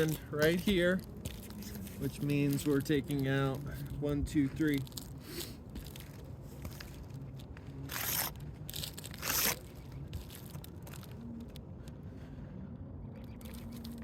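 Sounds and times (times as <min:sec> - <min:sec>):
roof shingles crunching and tearing: 0:04.4 - 0:11.6.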